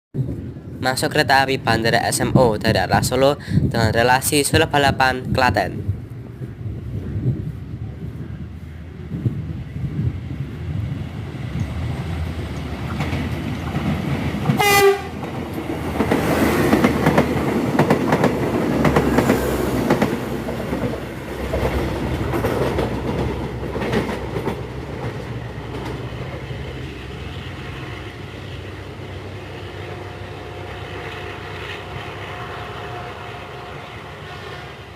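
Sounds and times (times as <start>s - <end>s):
train wheels clickety-clack: 9.1s - 28.5s
train horn blast: 14.5s - 15.2s, 29.7s - 34.9s.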